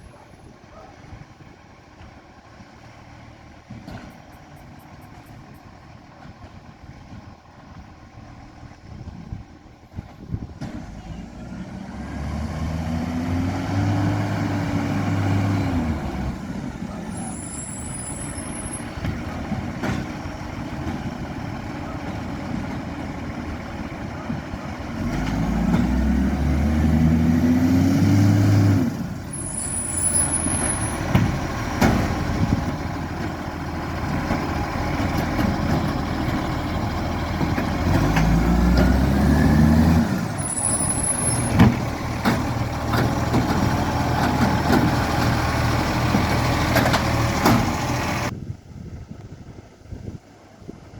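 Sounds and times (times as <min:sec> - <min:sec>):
truck engine revving: 0:10.8 - 0:48.3.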